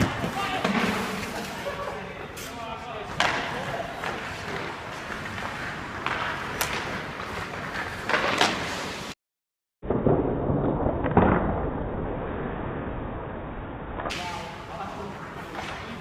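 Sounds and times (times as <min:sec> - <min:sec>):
ice rink noise: 0:00.0 - 0:09.2, 0:10.0 - 0:16.0
pucks and sticks knocking: 0:03.0 - 0:09.0.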